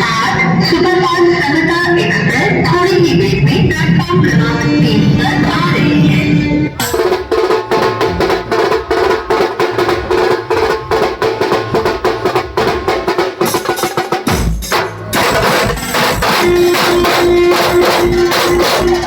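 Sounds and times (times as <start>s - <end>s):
band playing: 6.7s - 19.0s
rapid drum strokes: 6.8s - 19.0s
held melody note: 16.2s - 19.0s.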